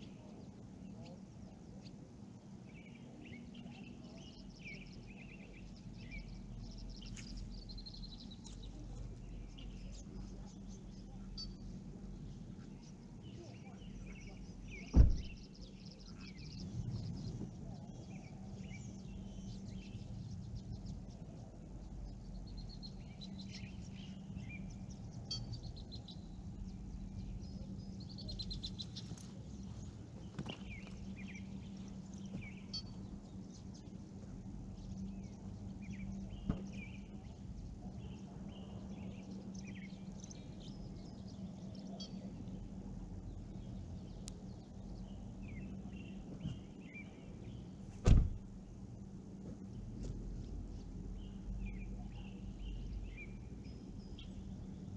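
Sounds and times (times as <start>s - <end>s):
low steady hum: 0.0s - 54.9s
small birds chirping: 0.0s - 54.9s
loud thump: 14.9s - 15.4s, 48.0s - 48.4s.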